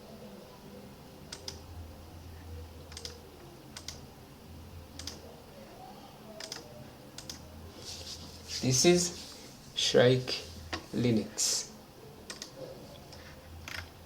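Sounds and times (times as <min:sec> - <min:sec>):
faint low hum: 0:00.0 - 0:14.0
computer keyboard keystrokes: 0:01.3 - 0:01.6, 0:02.9 - 0:03.2, 0:03.8 - 0:04.0, 0:05.0 - 0:05.2, 0:06.4 - 0:07.4, 0:12.3 - 0:13.9.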